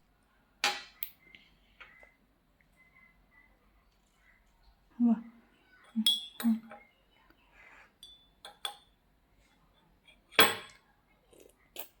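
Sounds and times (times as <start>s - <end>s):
light clinks of hard objects: 5.9s - 6.9s, 7.9s - 9.0s.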